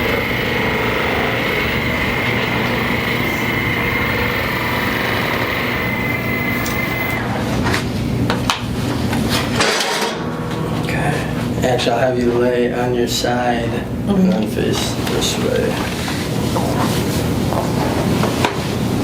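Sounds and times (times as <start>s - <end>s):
small electric machine running: 0.0s - 7.4s.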